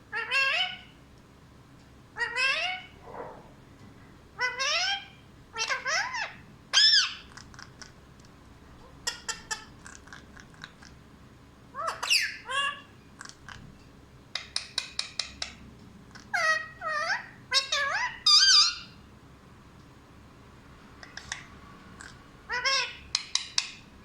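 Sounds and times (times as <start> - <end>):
parrot calls gliding up and down: 0.1 - 1.0, 2.2 - 3.6, 4.4 - 7.4, 11.7 - 12.9, 16.3 - 19.0, 21.0 - 23.9.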